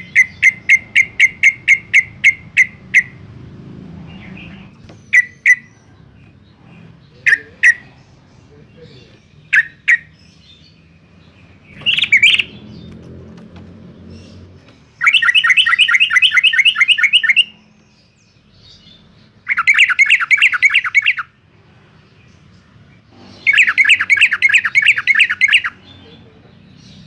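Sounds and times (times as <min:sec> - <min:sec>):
bird chattering: 0:00.0 - 0:03.3, 0:04.1 - 0:13.0, 0:14.1 - 0:21.4, 0:23.1 - 0:27.0
bird calling sharp notes: 0:00.0 - 0:03.4, 0:04.2 - 0:05.9, 0:07.2 - 0:08.0, 0:09.0 - 0:10.4, 0:11.7 - 0:12.8, 0:14.9 - 0:17.8, 0:19.4 - 0:21.4, 0:23.2 - 0:26.0.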